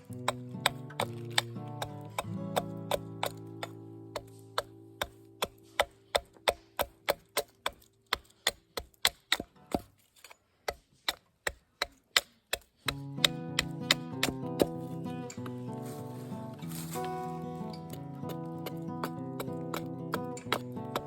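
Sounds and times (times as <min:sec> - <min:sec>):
background music: 0:00.0 - 0:06.9, 0:12.9 - 0:21.0
knife carving wood: 0:00.0 - 0:15.6, 0:17.7 - 0:21.0.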